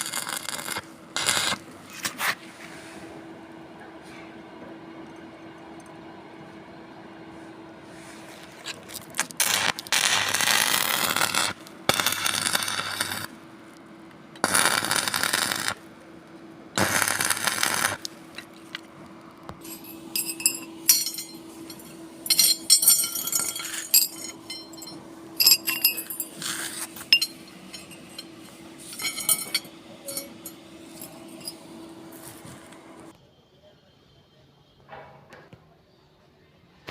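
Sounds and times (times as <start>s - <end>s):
arc welding crackle and sizzle: 0.0s - 2.4s, 8.3s - 33.2s
faint hum: 0.0s - 36.9s
mains buzz: 9.1s - 13.6s, 14.3s - 15.9s
metallic clinks on steel: 19.6s - 31.7s.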